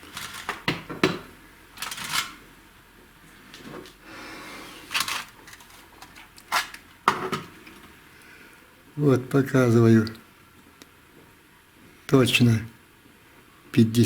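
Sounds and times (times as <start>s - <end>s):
metal parts clinking on workbench: 1.8s - 2.4s.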